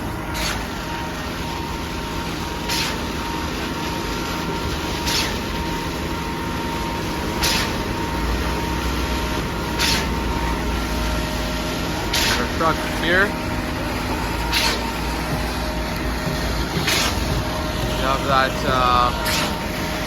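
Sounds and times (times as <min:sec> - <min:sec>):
concrete pump running: 0:00.0 - 0:20.0
short pump hiss: 0:09.8 - 0:10.2, 0:14.5 - 0:14.9.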